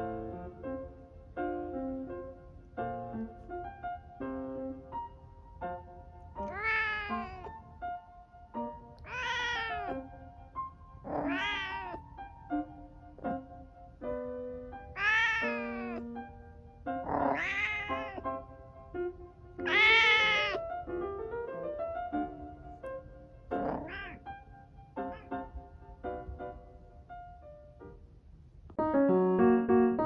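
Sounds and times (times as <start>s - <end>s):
light piano music: 0.0s - 30.0s
cat meowing: 6.3s - 7.7s, 9.0s - 10.3s, 11.0s - 12.2s, 14.9s - 16.2s, 17.0s - 18.3s, 19.6s - 20.7s, 23.5s - 24.3s.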